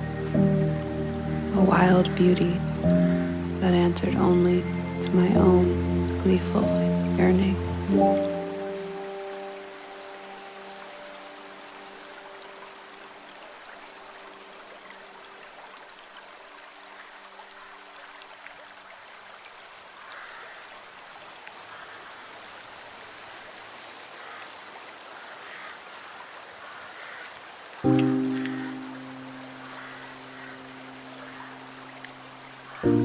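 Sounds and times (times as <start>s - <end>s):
soft low music chord: 0.0s - 15.7s, 27.8s - 33.0s
stream water flowing: 0.0s - 33.0s.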